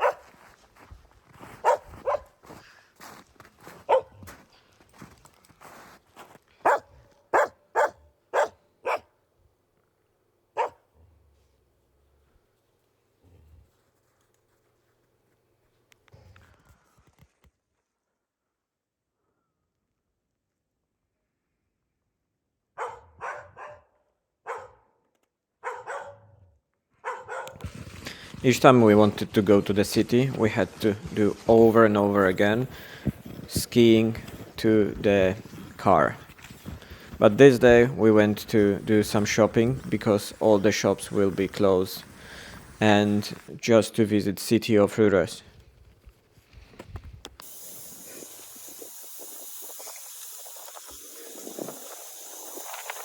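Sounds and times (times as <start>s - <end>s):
dog barking: 0.0s - 0.4s, 1.5s - 2.4s, 3.8s - 4.3s, 6.6s - 9.1s, 10.6s - 10.9s, 22.8s - 25.0s, 25.6s - 27.6s.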